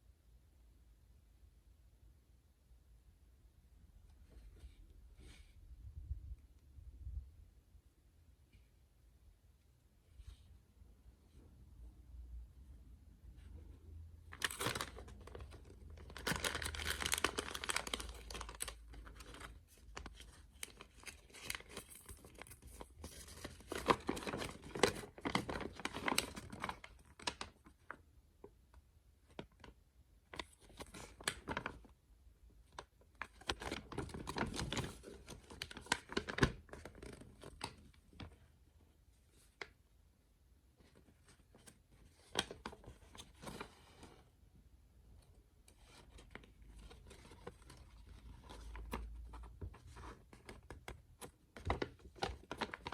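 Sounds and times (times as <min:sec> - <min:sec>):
packaging bags tearing and crinkling: 0:16.1 - 0:19.3.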